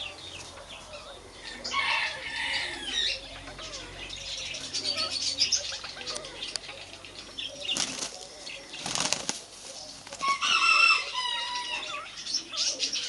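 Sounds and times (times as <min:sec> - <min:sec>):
chicken flapping wings: 0:07.7 - 0:10.5
chicken squawking: 0:10.2 - 0:12.8.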